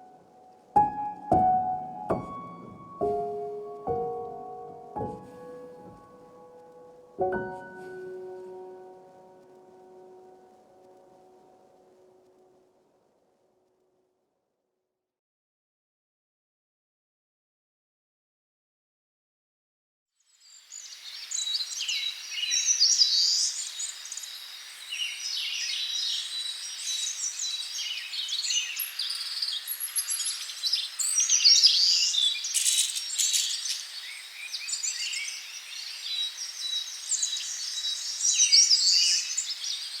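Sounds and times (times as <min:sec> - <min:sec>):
birds chirping and singing: 0:21.2 - 0:40.0.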